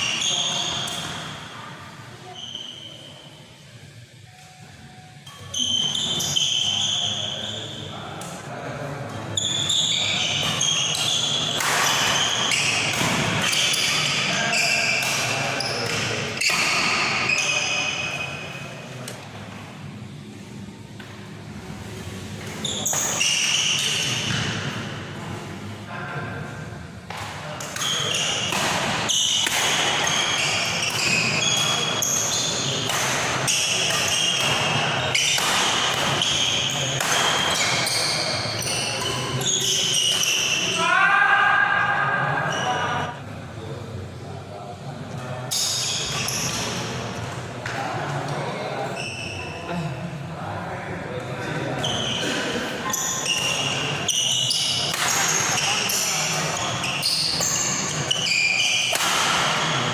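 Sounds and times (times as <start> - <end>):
shoes squeaking on floor: 2.2 - 3.2, 5.4 - 7.8, 9.4 - 18.5, 22.5 - 24.6, 27.8 - 40.6, 45.5 - 47.0, 48.9 - 49.6, 51.8 - 59.9
rackets hitting shuttlecock: 27.1 - 37.9, 54.6 - 59.8
racket hitting shuttlecock: 32.8 - 37.9, 54.9 - 56.1, 58.8 - 59.7.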